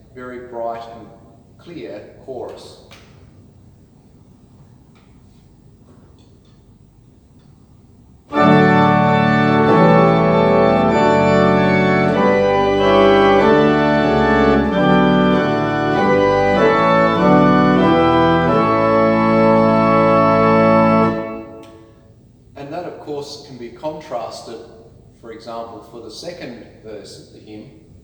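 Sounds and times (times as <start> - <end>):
pipe organ playing chords: 8.3 - 22.0.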